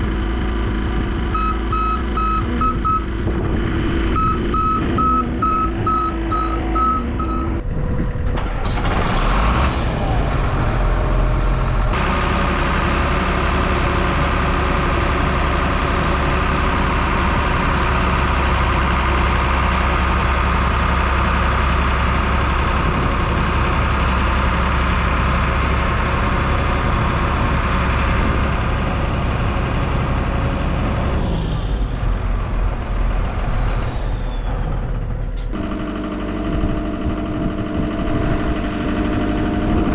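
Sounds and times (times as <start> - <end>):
engine revving with high whine: 0.0 - 19.7, 35.5 - 39.9
reversing alarm beeps: 4.2 - 7.6.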